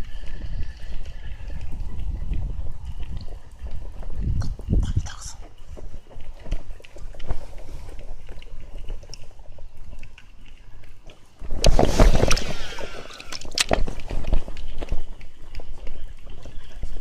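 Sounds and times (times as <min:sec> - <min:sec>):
water sloshing and splashing: 0:05.5 - 0:17.0.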